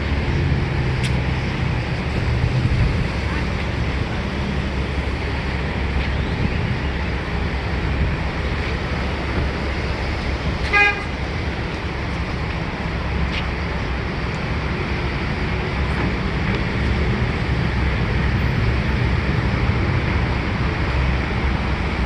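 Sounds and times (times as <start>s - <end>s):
traffic rumble: 0.0s - 22.0s
car horn toot: 10.7s - 11.1s.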